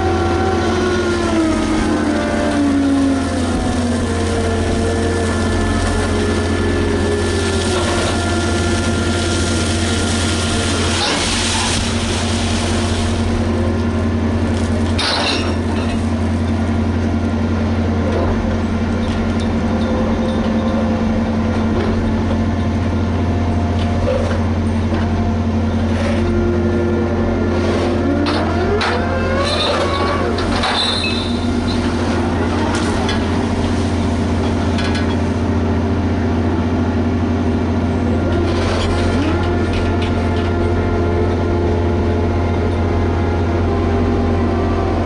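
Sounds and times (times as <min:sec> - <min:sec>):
diesel engine droning: 0:00.0 - 0:45.0
winch whining: 0:00.0 - 0:45.0
machinery rattling bursts: 0:01.1 - 0:23.4.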